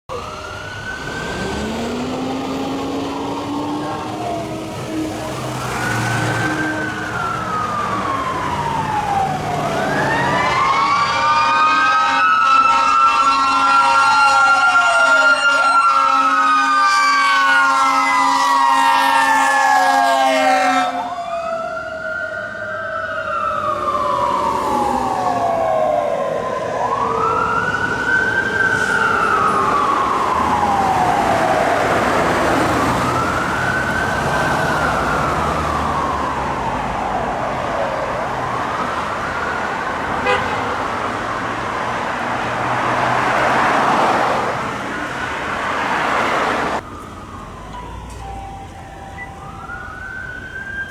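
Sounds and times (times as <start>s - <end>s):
siren wailing: 0.1s - 50.9s
air horn blasting: 10.8s - 21.1s, 40.2s - 40.9s.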